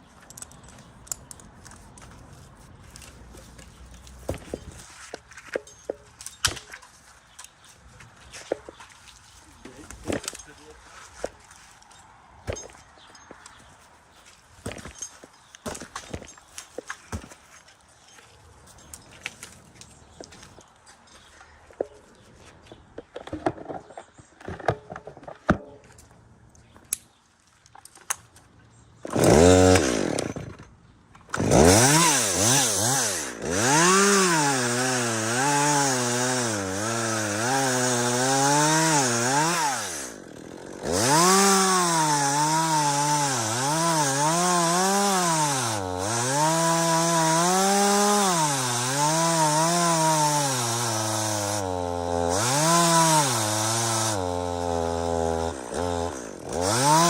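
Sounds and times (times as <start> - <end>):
chainsaw revving cutting wood: 29.0 - 30.5, 31.3 - 57.0.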